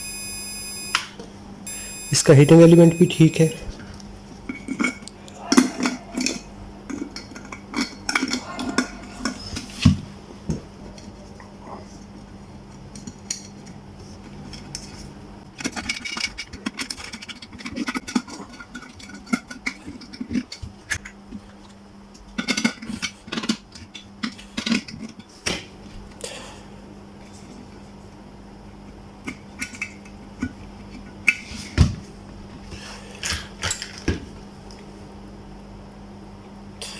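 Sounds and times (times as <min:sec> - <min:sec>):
steady low hum: 0:00.0 - 0:04.3.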